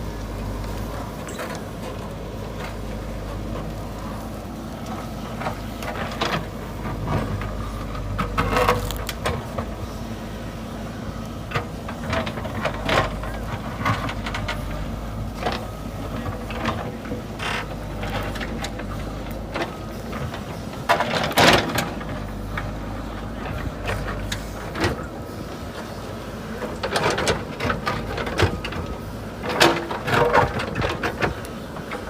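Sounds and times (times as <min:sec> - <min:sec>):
diesel engine running: 0:00.0 - 0:32.0.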